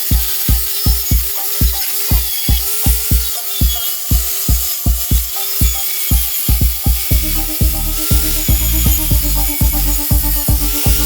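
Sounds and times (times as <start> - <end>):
heavy kick-drum beat: 0.0 - 11.0
sustained synth melody: 5.3 - 11.0.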